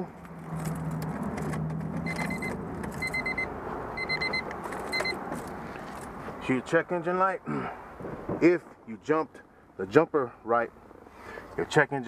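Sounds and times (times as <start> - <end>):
car warning chime beeping: 2.0 - 5.2.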